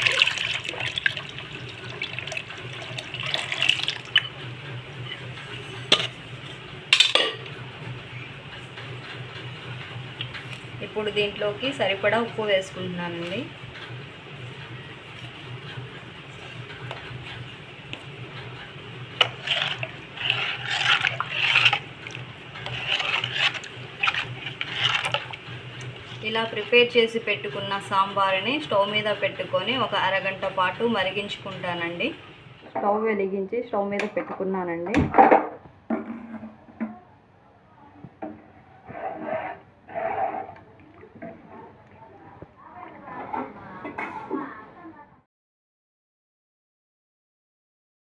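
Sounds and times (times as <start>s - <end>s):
liquid pouring and splashing into pot: 0.0s - 4.3s, 19.2s - 25.4s.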